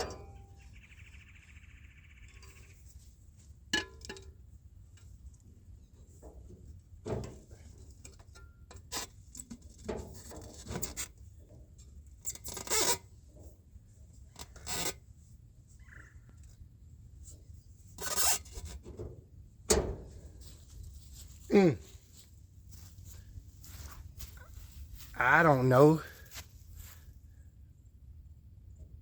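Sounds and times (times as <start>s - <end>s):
tube scraping against engine parts: 5.8s - 15.4s, 17.2s - 22.3s.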